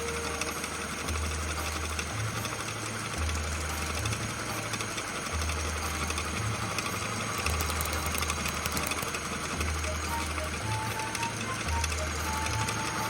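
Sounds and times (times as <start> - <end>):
car engine chattering: 0.0 - 13.0
music with bass line: 0.0 - 13.0.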